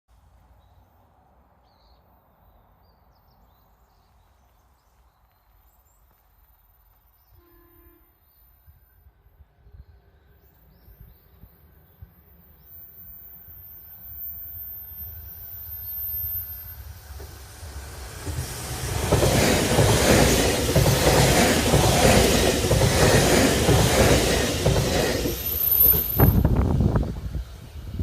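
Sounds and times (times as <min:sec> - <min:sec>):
electric train passing: 0:08.4 - 0:28.0.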